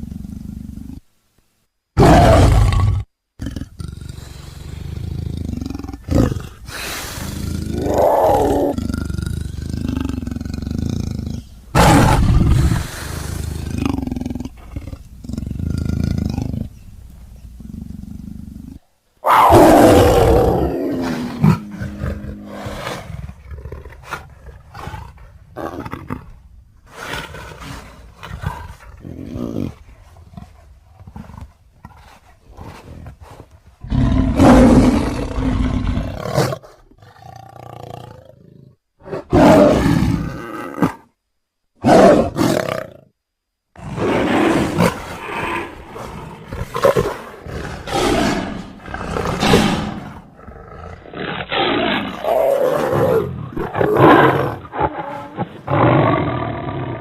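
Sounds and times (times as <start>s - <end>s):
big cat roaring and growling: 2.0s - 16.7s, 18.1s - 26.3s, 32.6s - 41.0s, 43.8s - 57.0s.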